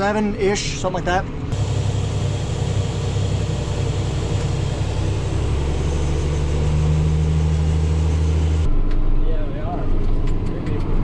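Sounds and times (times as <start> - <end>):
diesel tractor engine running: 0.0 - 8.8.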